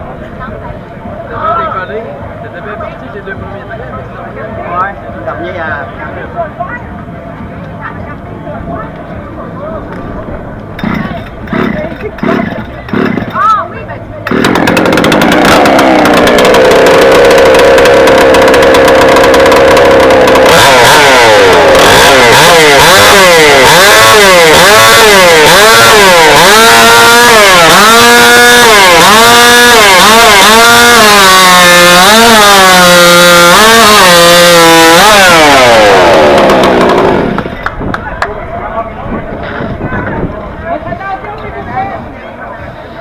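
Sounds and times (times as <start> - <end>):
chainsaw cutting log: 10.8 - 13.4, 14.2 - 37.6.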